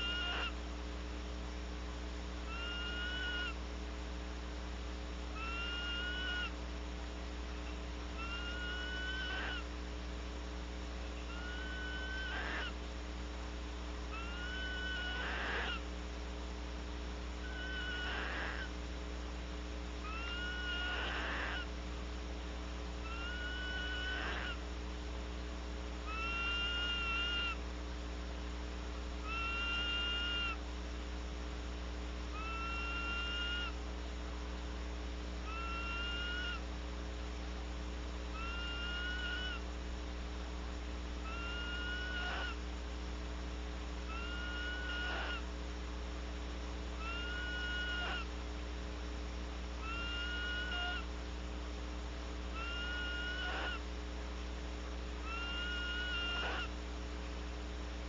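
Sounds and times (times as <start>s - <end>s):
barn owl screeching: 0.0s - 0.6s, 2.5s - 3.6s, 5.4s - 6.6s, 8.2s - 9.7s, 11.2s - 12.8s, 14.1s - 15.8s, 17.4s - 18.8s, 20.0s - 21.7s, 23.0s - 24.6s, 26.0s - 27.6s, 29.2s - 30.6s, 32.3s - 33.8s, 35.4s - 36.6s, 38.3s - 39.6s, 41.2s - 42.6s, 44.1s - 45.5s, 47.0s - 48.3s, 49.8s - 51.1s, 52.5s - 53.9s, 55.2s - 56.8s
electrical hum: 0.0s - 58.0s.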